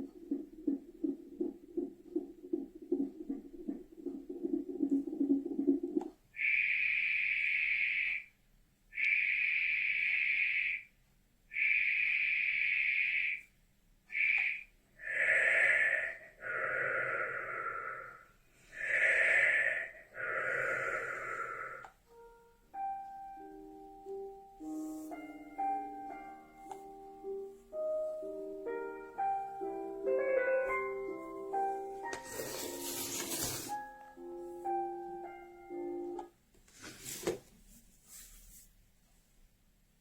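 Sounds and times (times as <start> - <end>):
pulsing heartbeat sound: 0.0 - 6.1
fuller noise swells: 14.1 - 21.9
piano lullaby: 20.6 - 36.5.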